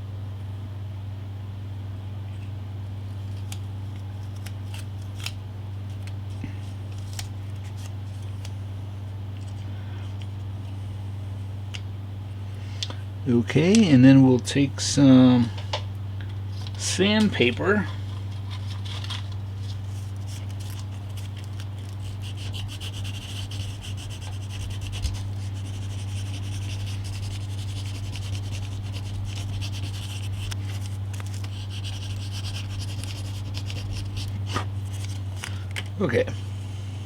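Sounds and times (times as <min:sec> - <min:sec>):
steady low hum: 0:00.0 - 0:37.0
sandpaper rubbing on painted wood: 0:22.0 - 0:35.2.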